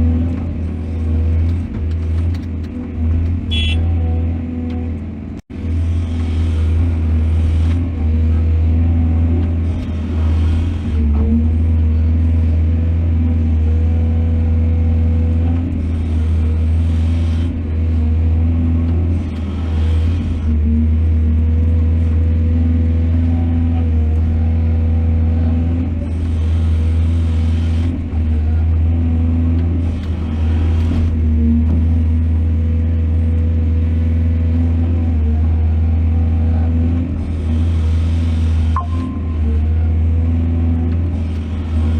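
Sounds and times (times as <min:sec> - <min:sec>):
excavator diesel engine drone: 0:00.0 - 0:41.9.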